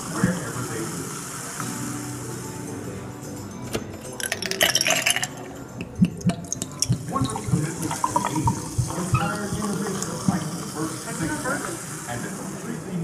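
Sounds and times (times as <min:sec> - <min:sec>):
liquid pouring: 0:04.1 - 0:12.5.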